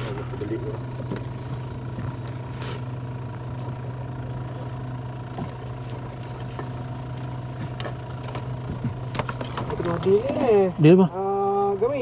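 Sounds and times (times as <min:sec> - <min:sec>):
boat engine idling: 0:00.0 - 0:12.0
faint steady whine: 0:00.0 - 0:12.0.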